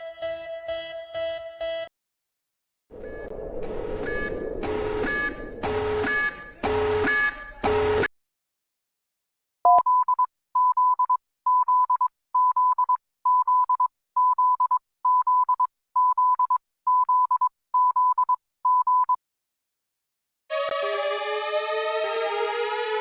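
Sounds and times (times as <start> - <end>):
emergency alert beeping: 3.0 - 8.1.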